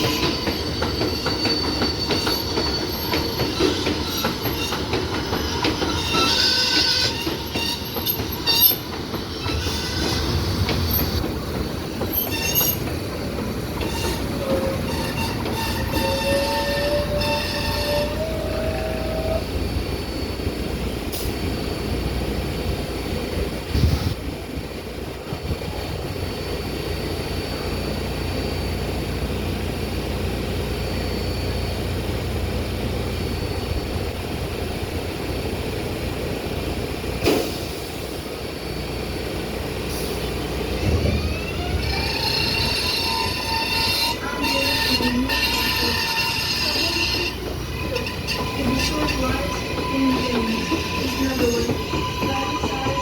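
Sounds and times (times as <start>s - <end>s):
train wheels rumbling on rail: 0.0s - 53.0s.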